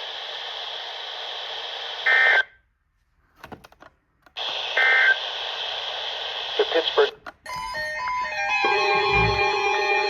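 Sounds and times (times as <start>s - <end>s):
radio static hiss: 0.0s - 2.5s, 4.4s - 7.2s.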